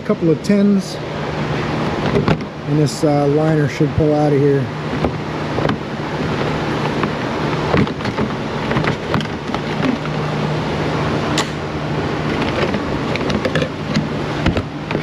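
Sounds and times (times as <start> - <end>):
steady low hum: 0.0 - 15.0
plastic scraping rustles: 12.2 - 15.0.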